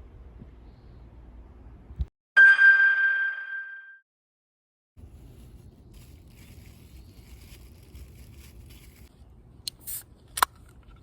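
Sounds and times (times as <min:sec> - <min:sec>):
low outdoor background rumble: 0:00.0 - 0:02.1, 0:05.0 - 0:11.0.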